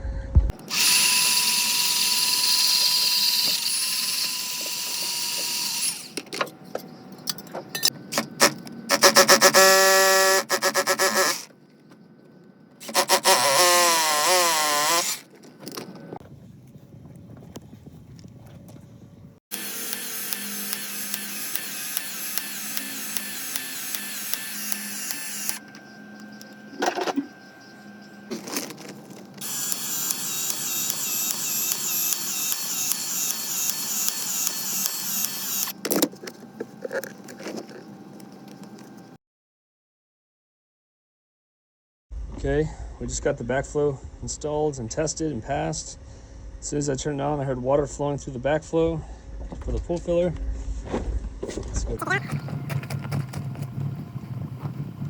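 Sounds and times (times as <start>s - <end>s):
motor whine: 0.2s - 6.3s, 19.5s - 39.2s, 52.0s - 55.0s
power tools running: 0.6s - 6.3s, 8.1s - 11.5s, 12.8s - 15.4s, 19.5s - 36.0s.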